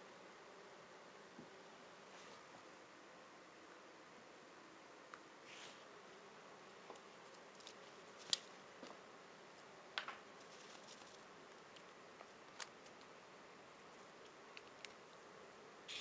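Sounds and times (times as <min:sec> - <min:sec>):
steady low hiss: 0:00.0 - 0:16.0.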